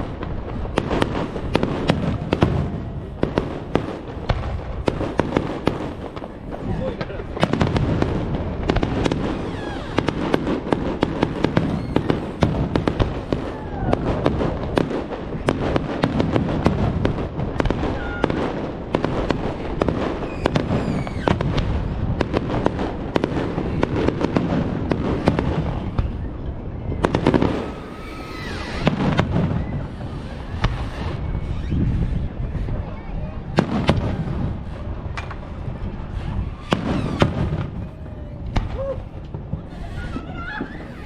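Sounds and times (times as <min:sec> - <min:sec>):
fireworks bursting: 0:00.0 - 0:41.0
fireworks whistling: 0:00.0 - 0:41.0.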